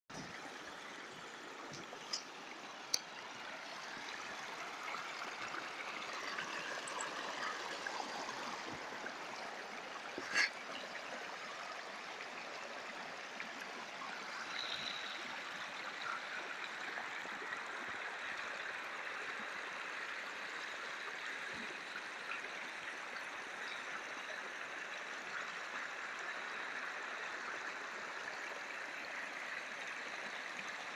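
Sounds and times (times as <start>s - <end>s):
running water bubbling: 0.1s - 19.6s.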